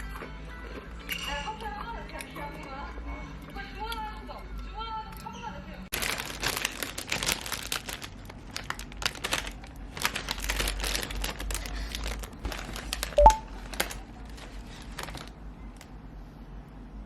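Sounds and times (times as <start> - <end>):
crinkling and clicking handling: 5.9 - 16.0
two-note rising electronic beep: 13.2 - 13.4.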